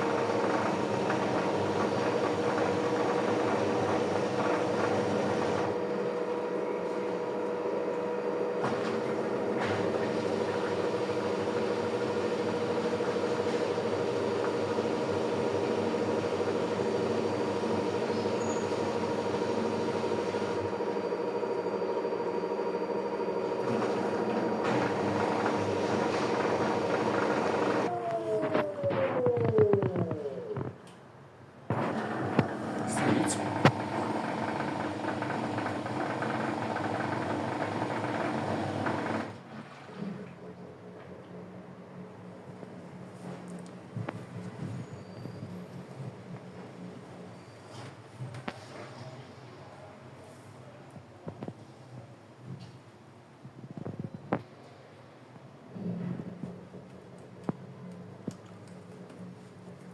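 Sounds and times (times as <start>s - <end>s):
washing machine running: 0.0s - 30.5s, 31.7s - 40.3s.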